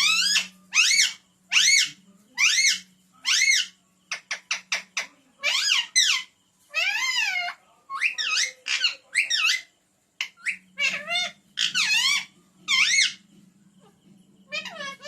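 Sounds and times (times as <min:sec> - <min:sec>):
parrot calling: 0:00.0 - 0:13.2, 0:13.8 - 0:15.0.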